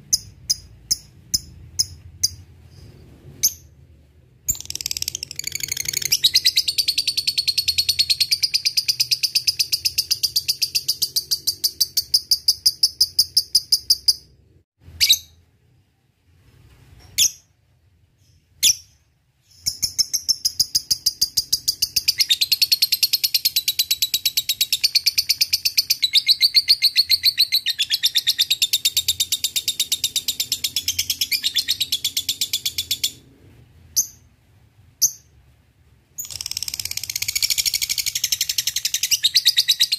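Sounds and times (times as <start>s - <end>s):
lovebird rapid high chattering: 4.5s - 14.2s, 36.2s - 39.9s.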